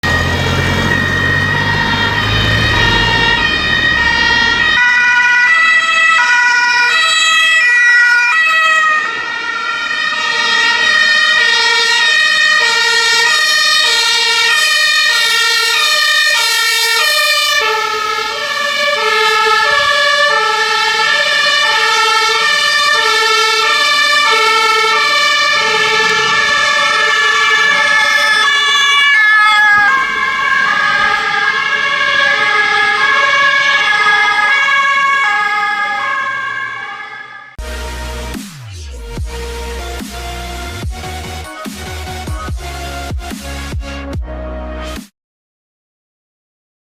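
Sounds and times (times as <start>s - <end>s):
low vehicle engine rumble: 0.0s - 4.8s
two-tone emergency sirens: 0.0s - 43.7s.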